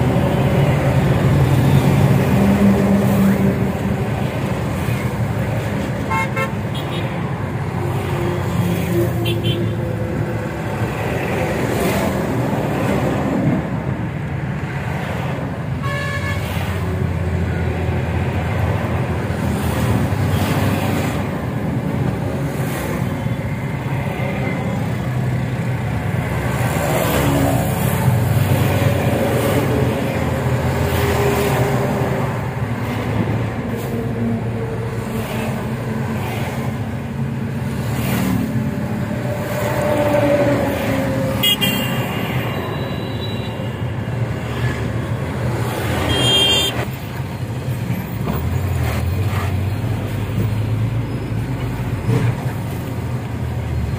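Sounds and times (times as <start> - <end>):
car horn toots: 46.1 - 46.8.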